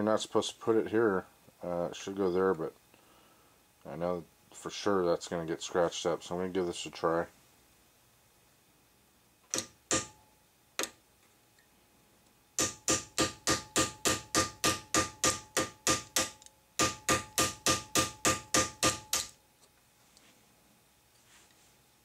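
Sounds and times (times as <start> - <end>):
hammer tapping steel punch: 9.5 - 10.2, 12.6 - 19.4.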